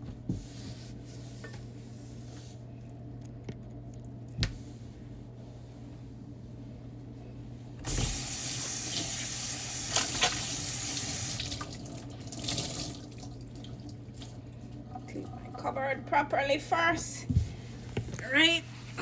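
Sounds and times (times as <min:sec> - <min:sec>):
water running into sink: 0:07.8 - 0:14.3.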